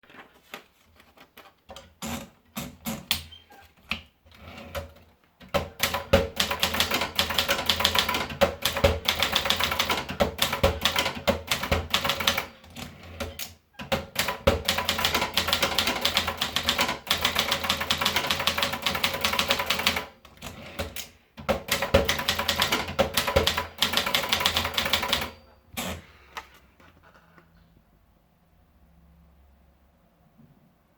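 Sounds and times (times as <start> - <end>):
typewriter keystrokes: 4.8 - 26.0.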